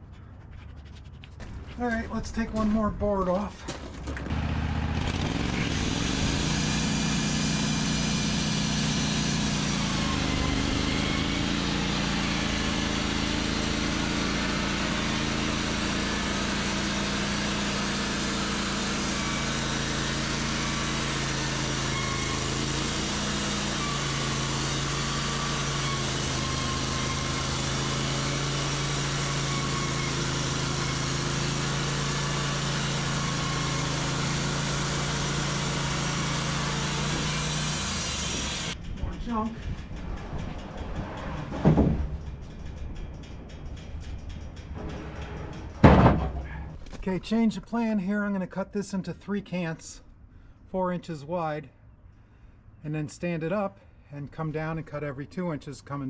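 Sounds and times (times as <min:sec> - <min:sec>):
sawmill engine running: 0:01.4 - 0:50.4
band saw cutting log: 0:04.3 - 0:39.5.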